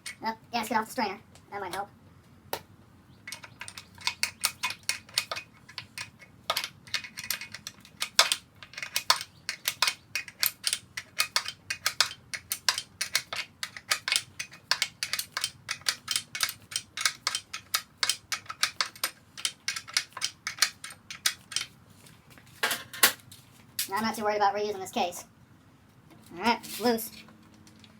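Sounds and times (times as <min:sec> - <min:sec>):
hand tools clicking on metal: 0:03.3 - 0:21.7.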